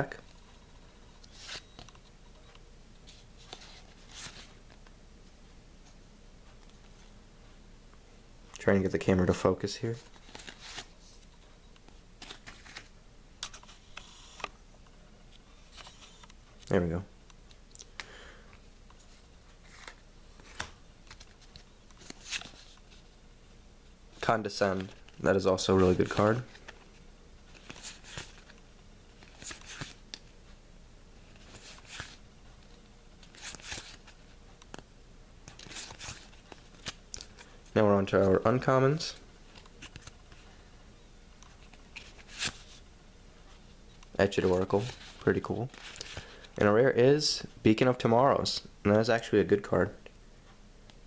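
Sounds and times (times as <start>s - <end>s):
trading cards handled: 1.3s - 2.0s, 10.0s - 11.3s, 12.2s - 14.5s, 15.3s - 16.3s, 18.9s - 23.0s, 24.6s - 28.6s, 29.2s - 30.2s, 31.3s - 34.8s, 35.5s - 37.5s, 39.5s - 40.4s, 41.4s - 42.8s, 44.0s - 46.6s.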